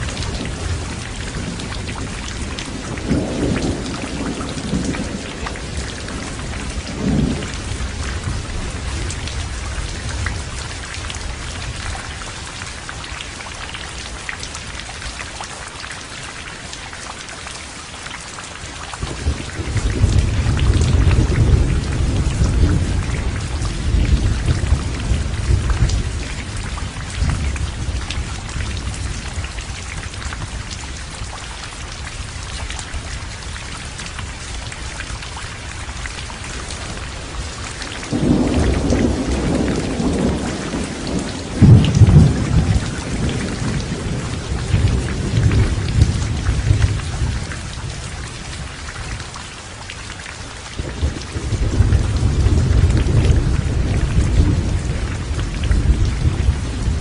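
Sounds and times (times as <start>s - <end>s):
thunder rumbling: 0.0s - 11.5s, 19.0s - 30.6s, 36.6s - 48.0s, 50.8s - 57.0s
heavy rain falling: 0.0s - 57.0s.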